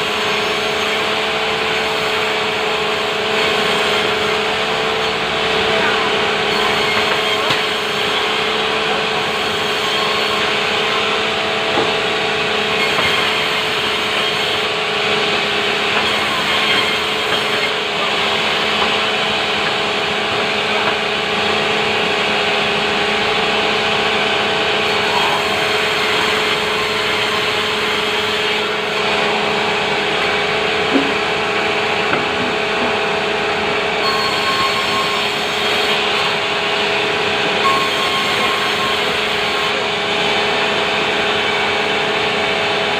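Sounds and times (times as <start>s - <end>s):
sawmill saw cutting timber: 0.0s - 42.9s.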